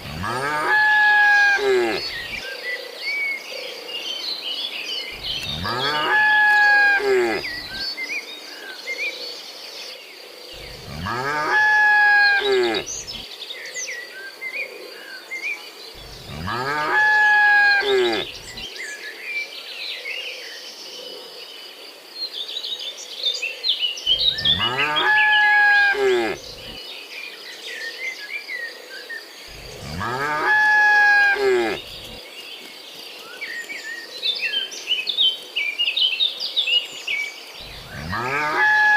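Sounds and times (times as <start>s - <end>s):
birds chirping: 0.0s - 2.4s, 5.0s - 8.0s, 10.5s - 13.3s, 15.9s - 18.8s, 24.1s - 26.9s, 29.4s - 34.1s, 37.6s - 38.9s
cattle mooing: 0.0s - 2.4s, 5.2s - 7.8s, 10.6s - 13.2s, 16.0s - 18.6s, 24.2s - 26.8s, 29.5s - 32.2s, 37.7s - 38.9s
crickets chirping: 0.0s - 3.8s, 5.0s - 9.0s, 10.2s - 15.1s, 15.8s - 19.0s, 24.1s - 35.7s, 36.8s - 38.9s.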